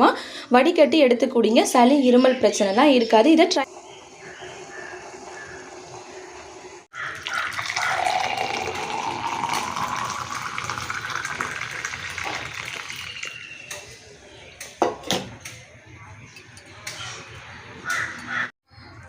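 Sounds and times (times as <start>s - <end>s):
liquid pouring into vessel: 7.0s - 13.6s.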